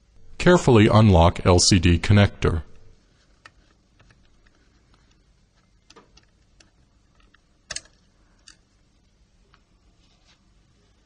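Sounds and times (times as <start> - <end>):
small tools clicking and tapping: 5.8 - 8.7.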